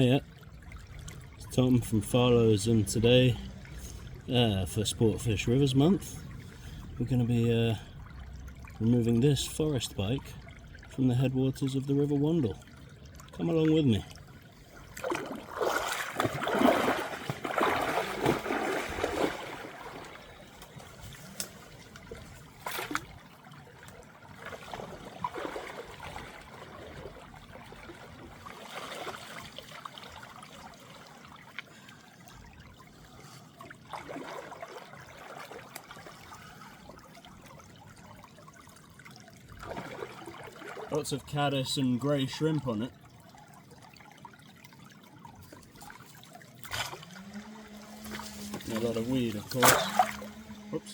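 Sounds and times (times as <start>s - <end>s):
river water trickling: 0.0s - 50.9s
splashing from wading: 14.0s - 37.0s, 39.1s - 41.0s, 43.6s - 50.9s.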